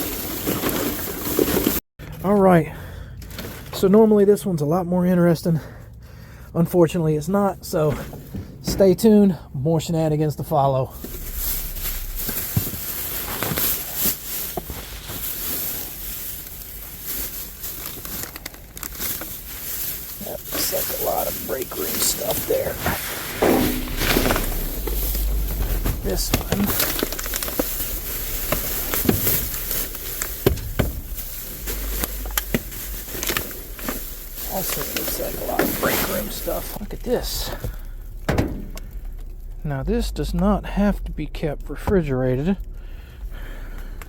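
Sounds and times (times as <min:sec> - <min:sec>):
trash bags rustling and knocking: 0:00.0 - 0:02.2, 0:11.0 - 0:39.6
steady hiss: 0:19.9 - 0:40.6.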